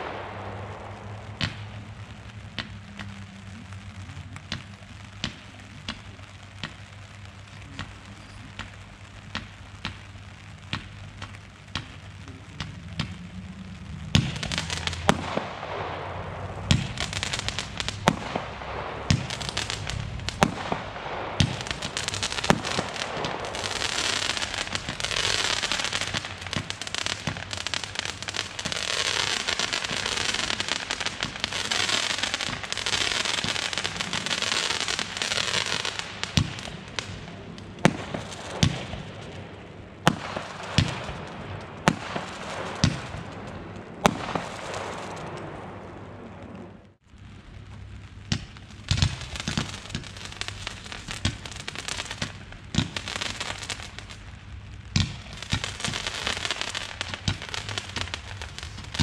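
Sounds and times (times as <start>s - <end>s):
fireworks shots and bangs: 0.0s - 46.9s, 48.2s - 59.0s
fireworks crackling: 0.0s - 59.0s.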